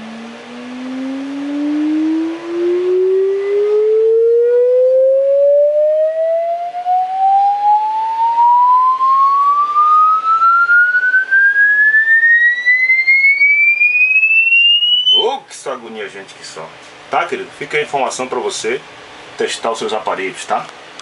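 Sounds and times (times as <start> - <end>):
sine wave test tone sweeping upward: 0.0 - 15.3.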